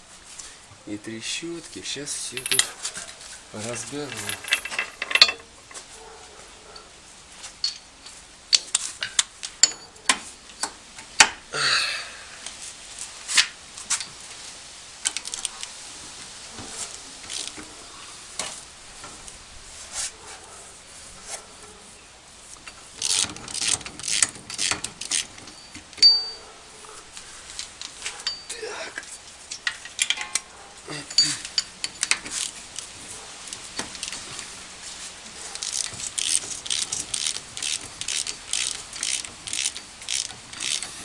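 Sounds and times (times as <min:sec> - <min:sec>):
tools and metal parts clinking: 0:01.9 - 0:05.8, 0:06.7 - 0:10.7, 0:16.8 - 0:17.9, 0:22.6 - 0:26.5, 0:27.4 - 0:34.7, 0:35.4 - 0:41.0.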